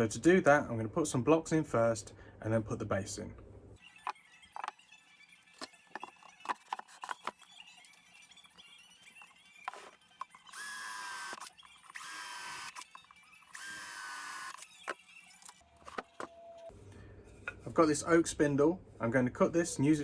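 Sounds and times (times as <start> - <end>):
power drill driving screws: 10.5 - 15.6.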